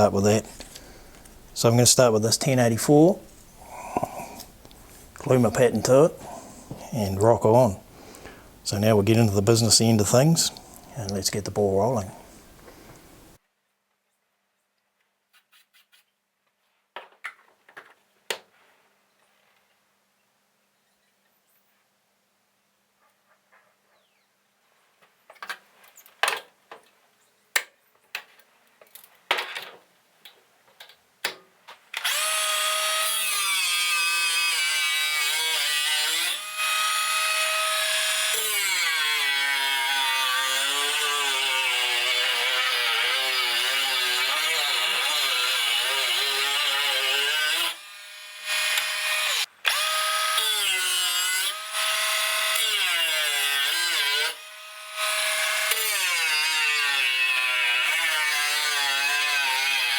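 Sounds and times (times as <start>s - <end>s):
power tool working steel: 32.0s - 59.9s.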